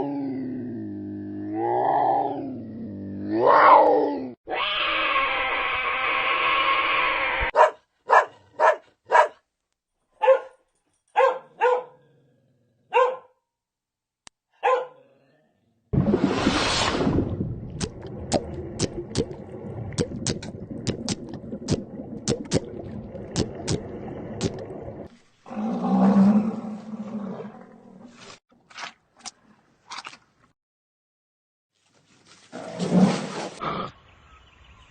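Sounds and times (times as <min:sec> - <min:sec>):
dog barking: 0:07.5 - 0:09.4, 0:10.2 - 0:12.0, 0:12.9 - 0:13.4, 0:14.6 - 0:15.1.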